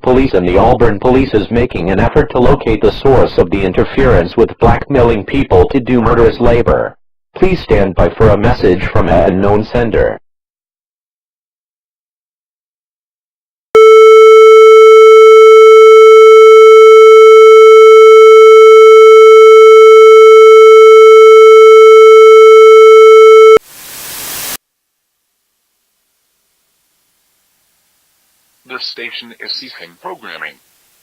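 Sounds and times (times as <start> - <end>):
static hiss: 23.6 - 31.0.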